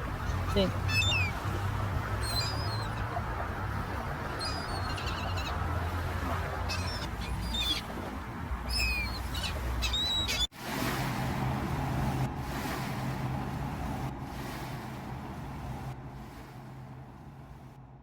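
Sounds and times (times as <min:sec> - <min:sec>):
low rush of outdoor noise: 0:00.0 - 0:10.5
short high bird calls: 0:00.2 - 0:01.4, 0:02.2 - 0:03.3, 0:04.3 - 0:05.6, 0:06.6 - 0:07.9, 0:08.7 - 0:10.5.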